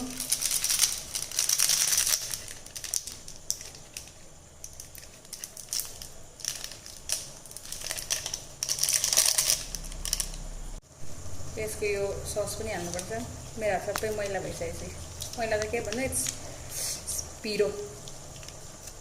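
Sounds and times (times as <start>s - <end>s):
plastic packets crinkling: 0.0s - 10.4s.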